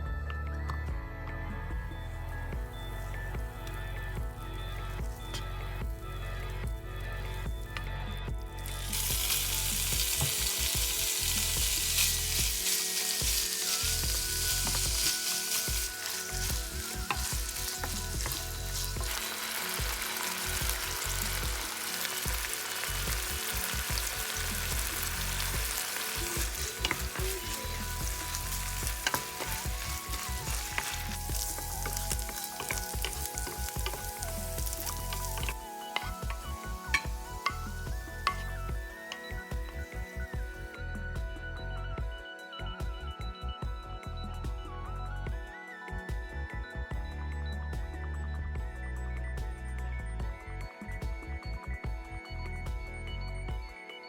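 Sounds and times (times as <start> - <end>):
food sizzling in frying pan: 8.6 - 40.8.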